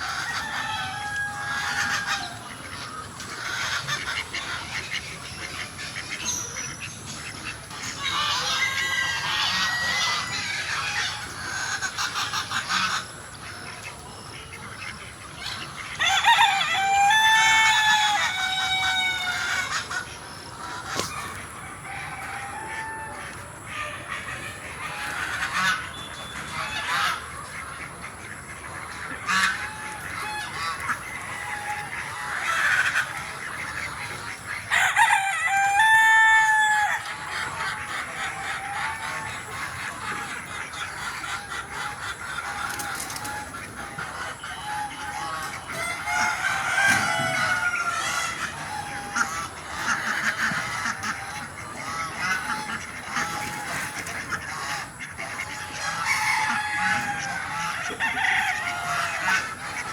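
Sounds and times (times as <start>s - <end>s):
rooster crowing: 0.0s - 2.4s, 8.4s - 10.4s, 16.0s - 19.6s, 21.8s - 24.0s, 34.7s - 39.4s, 44.6s - 49.2s, 55.9s - 59.5s
hens clucking: 0.0s - 59.9s.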